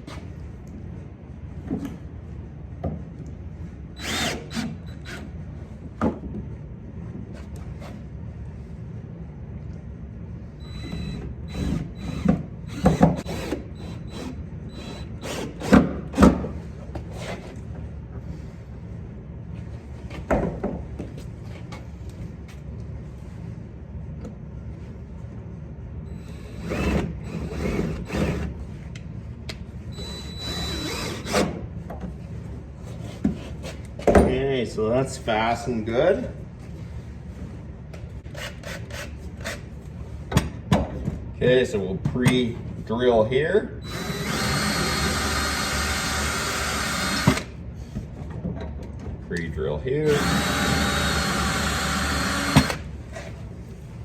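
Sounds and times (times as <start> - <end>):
power drill: 4.0 - 5.2, 10.6 - 15.7, 26.1 - 28.5, 30.0 - 31.5, 43.8 - 47.5, 50.1 - 52.9.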